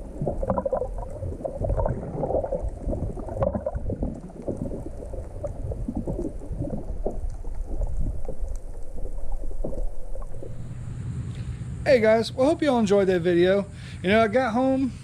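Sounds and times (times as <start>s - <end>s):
underwater gurgling and bubbling: 0.0s - 11.2s.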